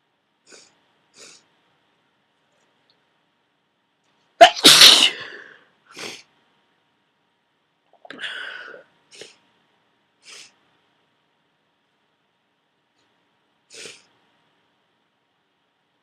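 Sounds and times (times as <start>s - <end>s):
person sniffing: 0.5s - 1.4s, 4.4s - 6.2s, 10.2s - 10.6s, 13.7s - 14.1s
person sneezing: 4.4s - 6.2s.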